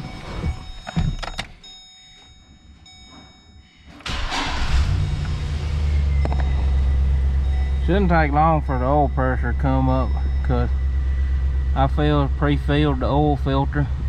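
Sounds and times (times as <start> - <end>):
knocks and clicks: 0.5 - 1.6
truck engine cranking and idling: 3.9 - 14.0.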